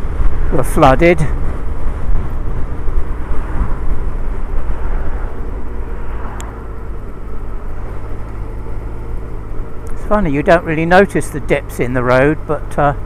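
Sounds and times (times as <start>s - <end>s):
motorcycle engine cruising: 0.0s - 13.0s
road and wind rumble: 0.0s - 13.0s.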